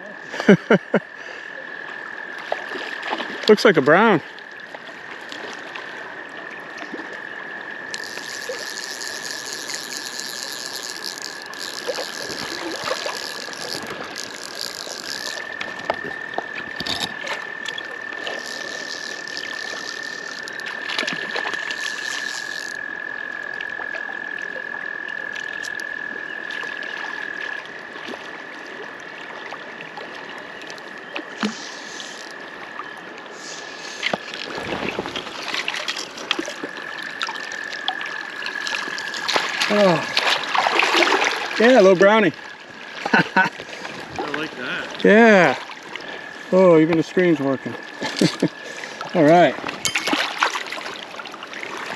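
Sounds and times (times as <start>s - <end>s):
higher buzzing frog call: 0.0s - 51.9s
creek water rushing: 1.7s - 22.9s, 26.6s - 51.9s
frog trilling: 7.1s - 27.4s.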